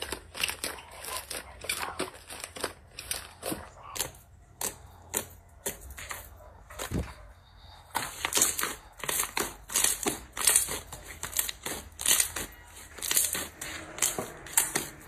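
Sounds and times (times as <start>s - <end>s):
slime crackling and popping: 8.1s - 15.0s.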